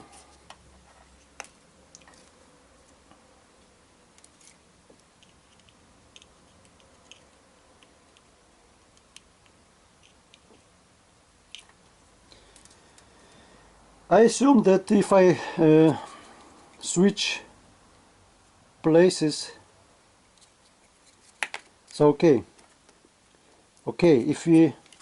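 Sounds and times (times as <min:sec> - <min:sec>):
faint clicks of small parts: 0:01.2 - 0:03.2, 0:04.1 - 0:08.3, 0:11.5 - 0:13.4, 0:24.8 - 0:25.0.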